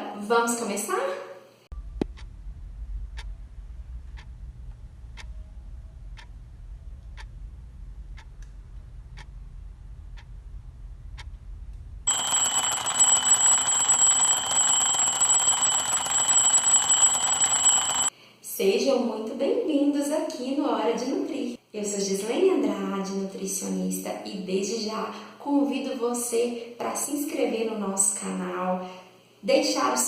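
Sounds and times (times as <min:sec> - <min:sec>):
low hum: 0:01.7 - 0:18.1
clock ticking: 0:02.0 - 0:02.3, 0:03.1 - 0:03.3, 0:07.1 - 0:07.4, 0:08.1 - 0:08.5
alarm clock ringing: 0:12.1 - 0:18.1.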